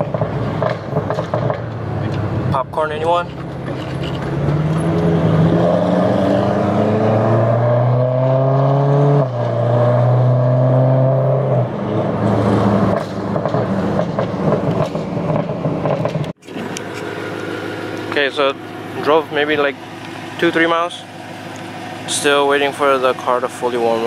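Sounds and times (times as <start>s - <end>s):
exhaust pops and crackles: 0.0s - 5.1s, 12.8s - 20.9s
car engine accelerating: 0.0s - 24.0s.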